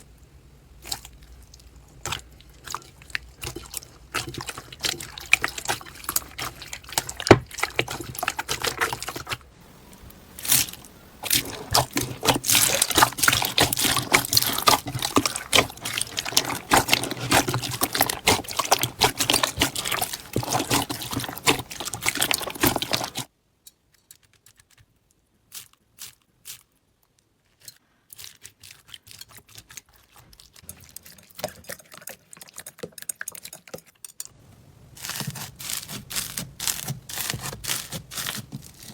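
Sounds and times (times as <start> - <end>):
slime squished by hand: 10.3 - 23.3.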